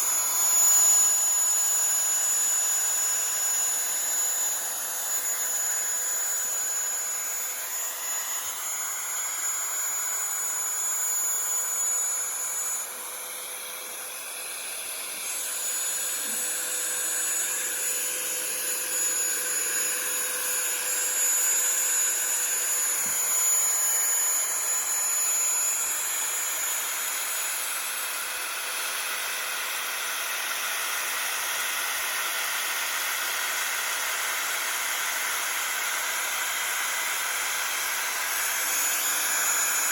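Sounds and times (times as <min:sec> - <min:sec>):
spindle high whine: 0:00.0 - 0:25.9
router milling metal hiss: 0:00.0 - 0:33.5, 0:35.4 - 0:39.9.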